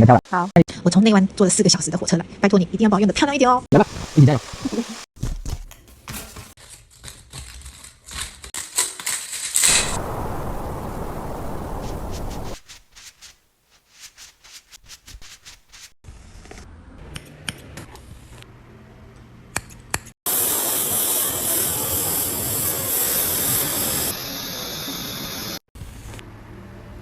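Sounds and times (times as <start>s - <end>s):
steady hiss: 3.8s - 5.1s, 9.6s - 12.6s.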